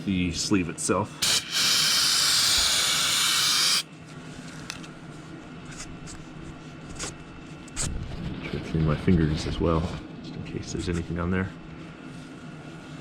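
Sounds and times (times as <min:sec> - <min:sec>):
aerosol spray hiss: 0:01.2 - 0:03.8.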